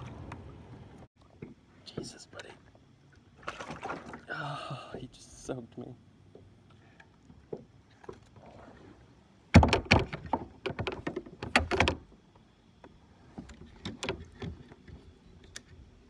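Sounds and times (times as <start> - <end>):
water splashing: 3.1 - 4.4.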